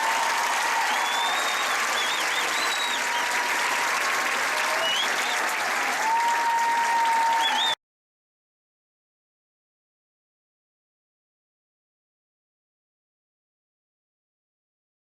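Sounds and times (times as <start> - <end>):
crowd applauding and cheering: 0.0 - 7.8
whistles: 0.6 - 3.8, 4.7 - 5.5, 6.2 - 7.8.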